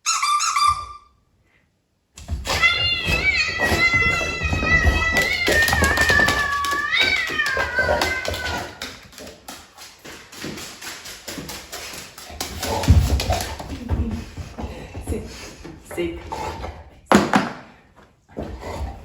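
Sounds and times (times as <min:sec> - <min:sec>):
cat meowing: 0:02.3 - 0:09.2.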